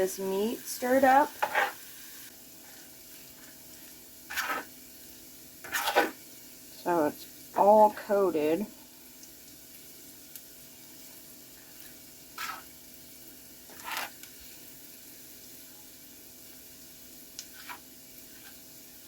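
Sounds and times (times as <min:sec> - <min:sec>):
meat sizzling in a pan: 0:00.0 - 0:19.0
spoon scraping a pan: 0:01.0 - 0:01.9, 0:02.6 - 0:04.8, 0:05.6 - 0:06.2, 0:11.6 - 0:12.8, 0:13.6 - 0:14.3, 0:17.4 - 0:18.6.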